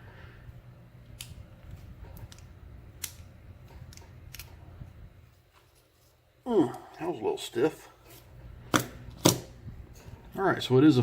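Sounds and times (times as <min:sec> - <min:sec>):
lock cylinder metallic clicks: 0:02.1 - 0:04.6.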